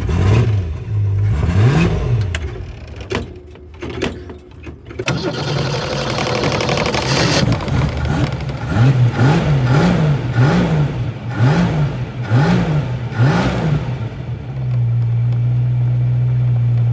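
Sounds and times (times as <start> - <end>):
vehicle engine revving: 0.0 - 2.8, 5.1 - 14.8
engine idling: 5.0 - 13.2.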